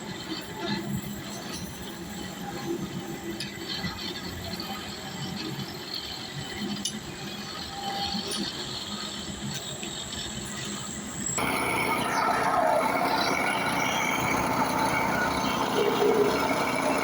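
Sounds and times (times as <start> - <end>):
construction mechanical din: 11.1 - 17.0.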